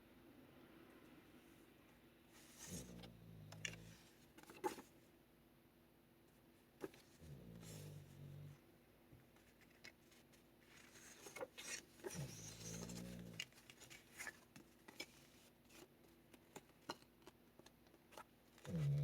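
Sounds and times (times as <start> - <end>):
paper rustling: 3.6 - 4.9, 9.4 - 18.9.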